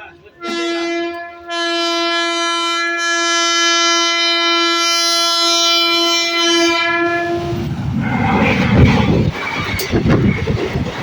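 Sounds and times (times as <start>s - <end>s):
train passing rumble: 0.0s - 11.0s
locomotive horn blast: 0.1s - 7.7s.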